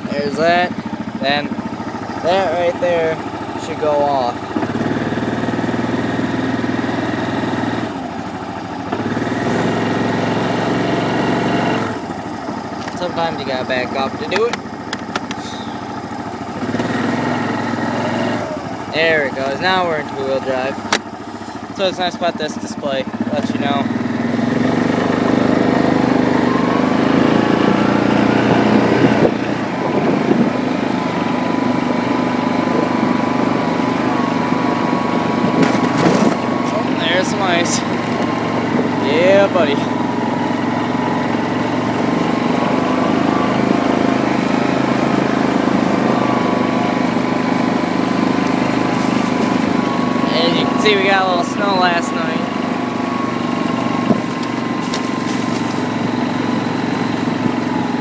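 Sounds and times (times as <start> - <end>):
atv engine running: 0.0 - 58.0
thin steady whine: 26.3 - 58.0.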